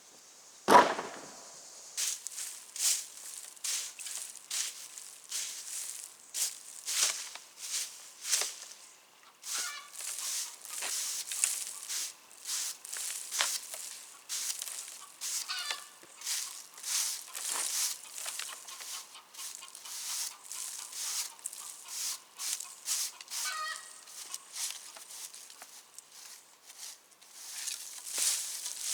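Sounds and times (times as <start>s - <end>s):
scraping or brushing strokes: 2.0s - 8.8s, 9.4s - 28.9s
bird calls: 8.8s - 12.0s, 12.9s - 25.0s.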